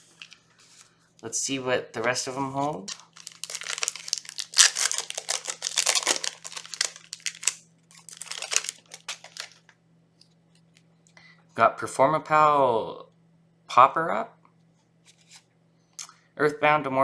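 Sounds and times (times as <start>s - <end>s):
foil wrapper tearing and crinkling: 2.8s - 9.6s.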